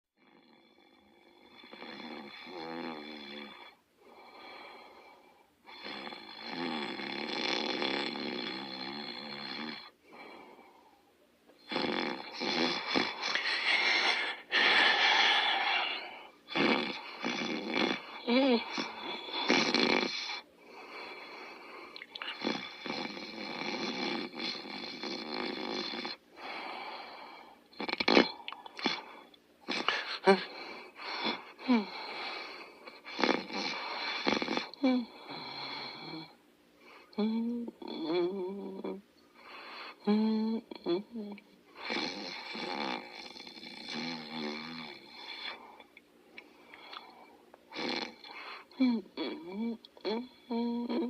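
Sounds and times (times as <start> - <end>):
quiet breath: 3.7 - 5.7, 9.9 - 11.2, 12.3 - 17.3, 20.2 - 22.4, 26.3 - 27.7, 28.5 - 33.1, 35.0 - 37.2, 39.2 - 40.1, 45.1 - 47.5, 48.2 - 48.8
person snoring: 11.6 - 20.4, 22.2 - 29.1, 29.7 - 36.3, 40.0 - 45.6, 47.7 - 51.0
short sharp snorts: 11.7 - 17.9.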